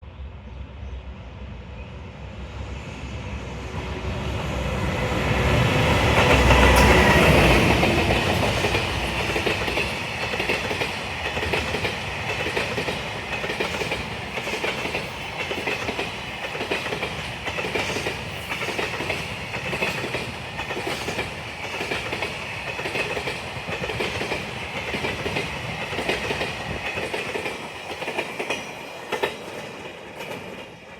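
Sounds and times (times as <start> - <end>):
electric locomotive passing: 0.1 - 30.9
wheels clacking over rail joints: 6.1 - 30.9.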